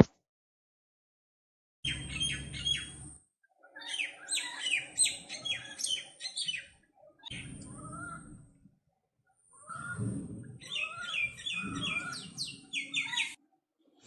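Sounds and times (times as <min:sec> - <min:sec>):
bird chirps and whistles: 0:10.6 - 0:13.4.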